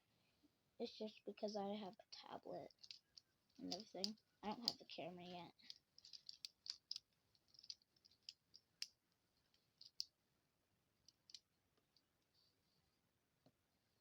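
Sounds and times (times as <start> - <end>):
butterfly knife handles clicking: 2.7 - 9.0.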